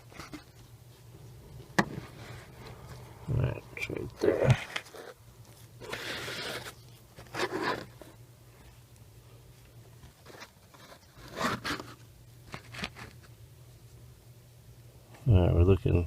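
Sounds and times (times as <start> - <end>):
scraping and rustling of tool: 0.0 - 1.0, 4.2 - 8.2, 9.6 - 13.4
faint low hum: 0.0 - 16.0.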